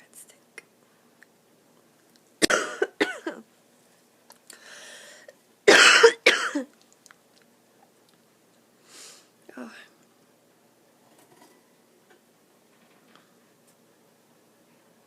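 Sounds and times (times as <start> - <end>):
person coughing: 2.4 - 3.4, 5.7 - 6.7
person drawing breath: 4.5 - 5.4, 8.8 - 9.3.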